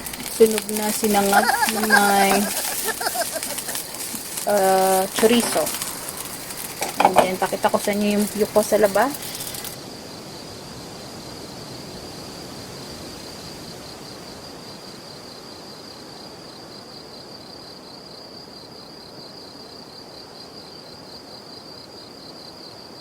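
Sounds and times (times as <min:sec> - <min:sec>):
rice sizzling in a pan: 0:00.0 - 0:15.1
cricket trilling: 0:00.0 - 0:23.0.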